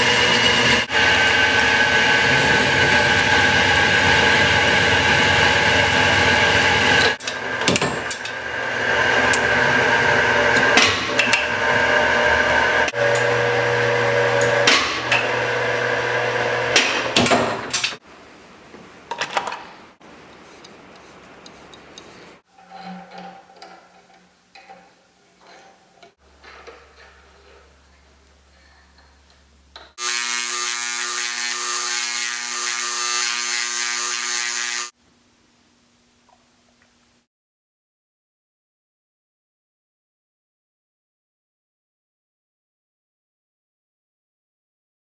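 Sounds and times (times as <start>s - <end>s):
power tool steady whine: 0.0s - 17.6s, 30.0s - 35.0s
power tool running loudly: 0.0s - 17.7s, 30.0s - 35.0s.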